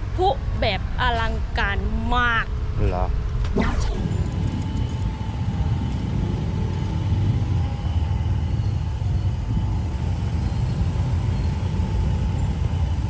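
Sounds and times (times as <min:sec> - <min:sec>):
street traffic rumble: 0:09.7 - 0:13.0.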